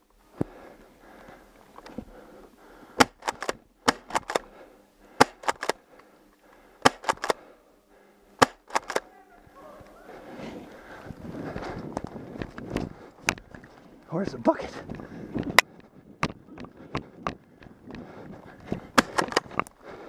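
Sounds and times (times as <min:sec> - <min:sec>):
airsoft shotgun pops: 0:03.0 - 0:04.4, 0:06.8 - 0:07.4, 0:08.4 - 0:09.0, 0:19.0 - 0:19.5.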